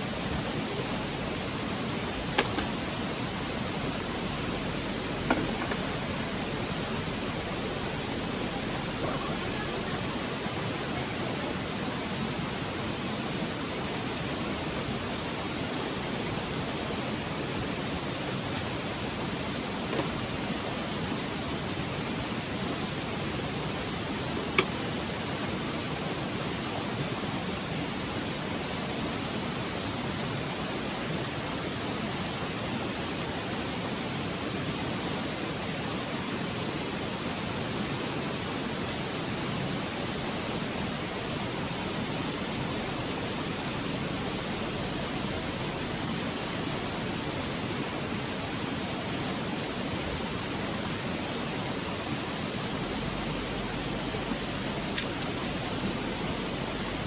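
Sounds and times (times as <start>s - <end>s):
pressure lantern hissing: 53.1s - 57.0s.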